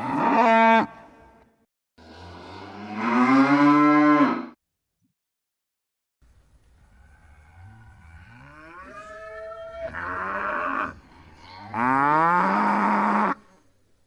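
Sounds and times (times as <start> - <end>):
cow mooing: 7.1 - 13.4.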